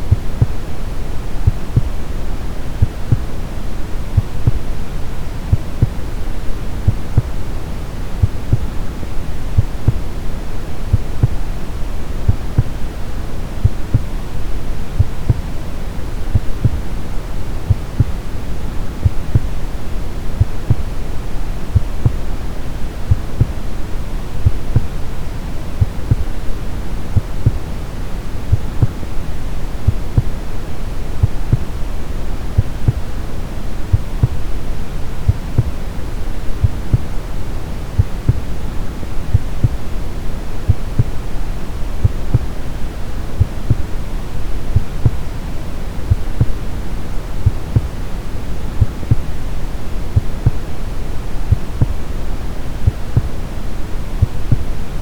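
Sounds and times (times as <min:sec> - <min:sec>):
heartbeat: 0:00.0 - 0:00.7, 0:01.3 - 0:02.1, 0:02.8 - 0:03.4, 0:04.2 - 0:04.8, 0:05.5 - 0:07.4, 0:08.2 - 0:08.8, 0:09.6 - 0:10.1, 0:10.8 - 0:11.5, 0:12.2 - 0:12.8, 0:13.6 - 0:14.2, 0:15.0 - 0:15.5, 0:16.3 - 0:17.0, 0:17.7 - 0:18.3, 0:19.0 - 0:19.6, 0:20.4 - 0:21.0, 0:21.7 - 0:22.3, 0:23.1 - 0:23.7, 0:24.4 - 0:25.0, 0:25.8 - 0:26.4, 0:27.2 - 0:27.6, 0:28.5 - 0:29.1, 0:29.8 - 0:30.4, 0:31.2 - 0:31.8, 0:32.5 - 0:33.2, 0:33.9 - 0:34.4, 0:35.3 - 0:35.8, 0:36.5 - 0:37.1, 0:38.0 - 0:38.5, 0:39.3 - 0:39.9, 0:40.7 - 0:41.2, 0:42.0 - 0:42.6, 0:43.4 - 0:43.9, 0:44.7 - 0:45.3, 0:46.1 - 0:46.8, 0:47.4 - 0:48.0, 0:48.8 - 0:49.4, 0:50.2 - 0:50.7, 0:51.5 - 0:52.0, 0:52.8 - 0:53.4, 0:54.2 - 0:54.8.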